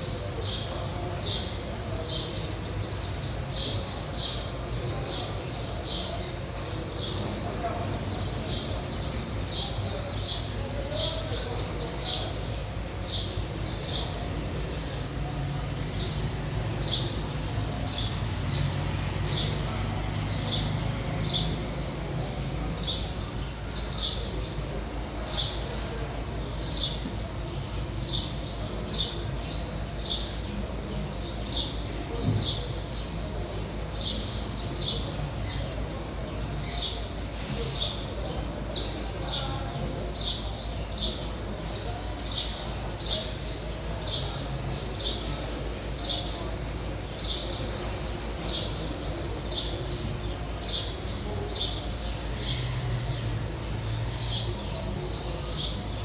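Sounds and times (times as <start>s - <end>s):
bird high chirp: 50.7s - 53.2s.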